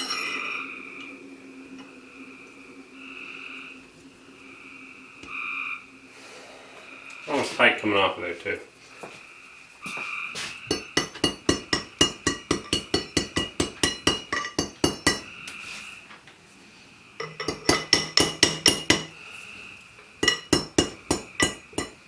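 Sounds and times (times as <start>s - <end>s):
hammer tapping on steel: 10.7s - 15.3s, 17.2s - 19.2s, 20.2s - 22.0s.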